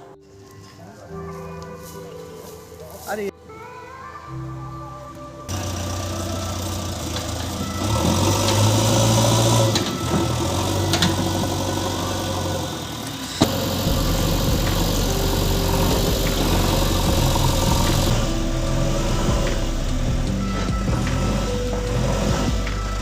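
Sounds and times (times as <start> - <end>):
engine humming: 5.5 - 23.0.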